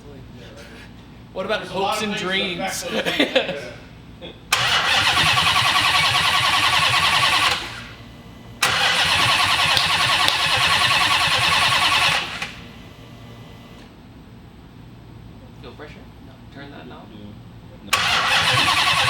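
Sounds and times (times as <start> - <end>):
starter motor cranking: 4.5 - 8.0, 8.6 - 12.7, 18.0 - 19.0.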